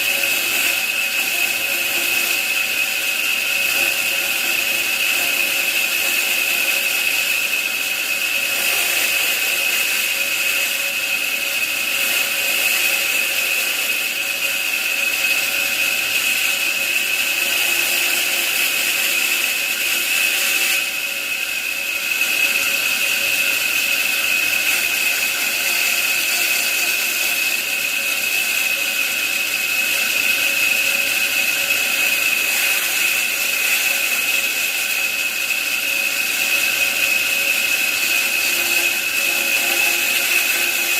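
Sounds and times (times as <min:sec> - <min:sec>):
power tool whining: 0:00.0 - 0:40.9.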